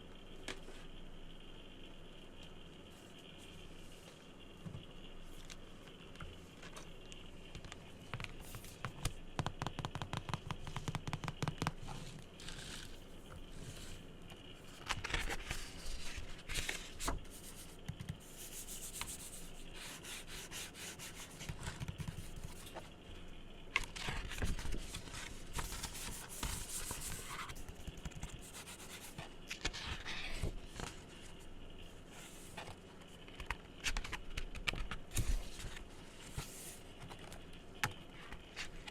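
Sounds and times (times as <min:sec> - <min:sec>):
scratching and rubbing on surface: 0:18.3 - 0:22.8, 0:28.3 - 0:30.9.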